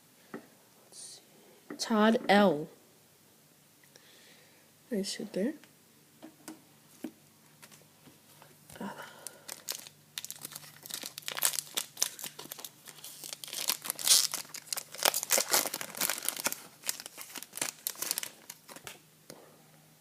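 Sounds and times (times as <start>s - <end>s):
plastic wrapper tearing and crinkling: 9.3s - 19.0s.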